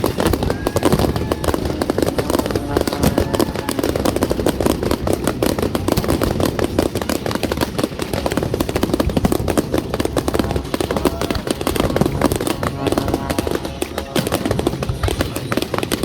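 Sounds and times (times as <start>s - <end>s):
fireworks popping and crackling: 0.0s - 16.0s.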